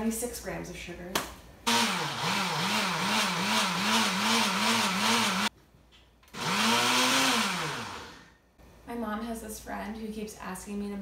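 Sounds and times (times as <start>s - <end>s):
blender grinding: 1.7s - 5.5s, 6.3s - 8.3s.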